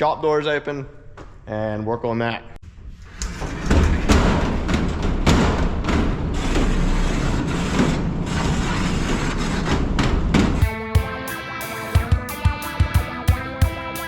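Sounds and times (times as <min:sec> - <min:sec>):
large door rolling open: 0:02.7 - 0:10.6.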